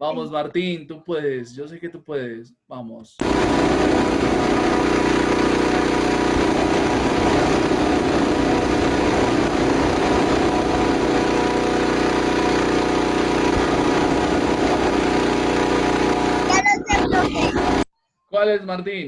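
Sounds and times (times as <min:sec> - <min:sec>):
engine idling: 0:03.2 - 0:17.8.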